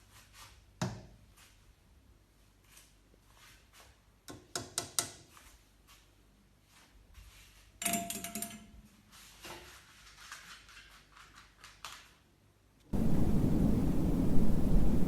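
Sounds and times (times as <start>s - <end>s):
low rushing noise: 13.0s - 15.0s.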